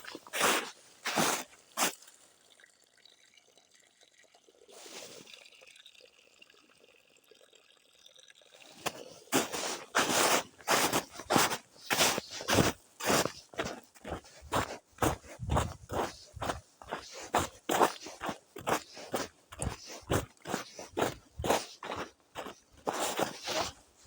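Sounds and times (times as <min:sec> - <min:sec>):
footsteps on woodland path: 0:00.0 - 0:02.0, 0:08.8 - 0:24.0.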